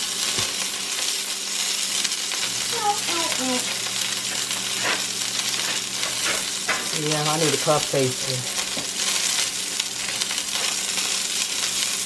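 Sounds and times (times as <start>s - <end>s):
steady hiss: 0.0s - 12.0s
faint voice: 2.7s - 3.7s.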